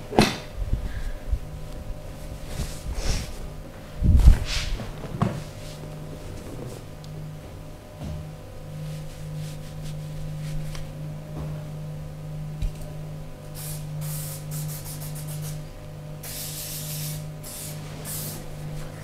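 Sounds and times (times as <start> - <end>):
spray bottle hissing: 13.6 - 15.6, 16.2 - 18.5.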